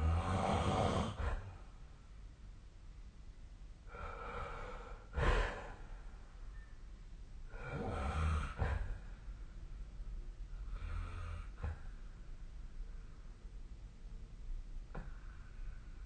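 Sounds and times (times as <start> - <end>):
person snoring: 0.0 - 1.5, 7.5 - 9.0.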